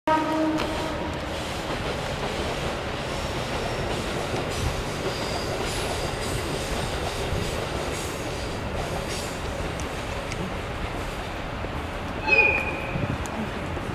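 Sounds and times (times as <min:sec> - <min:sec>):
rumble of train wheels on rails: 0:00.1 - 0:13.9
high-pitched wheel squeal: 0:12.2 - 0:13.2.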